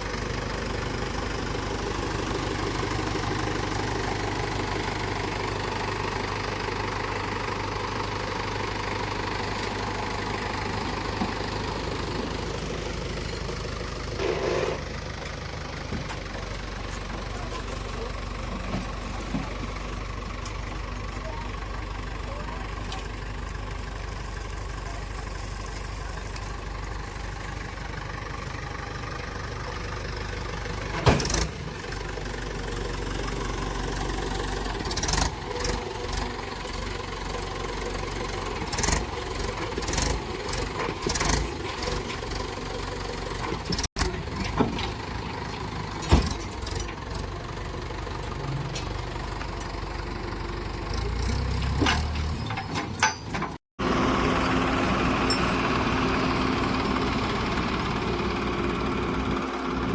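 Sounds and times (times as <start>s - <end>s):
diesel engine running: 0.0s - 59.9s
sharp metal clanks: 51.8s - 53.6s.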